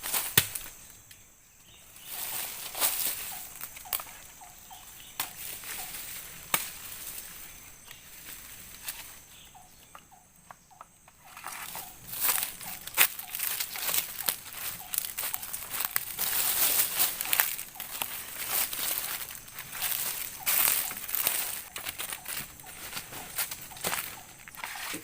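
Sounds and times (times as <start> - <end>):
faint high insect drone: 0.0 - 25.0
leaves and twigs crackling: 0.0 - 25.0
small animal chirping: 2.0 - 6.1, 9.3 - 24.9.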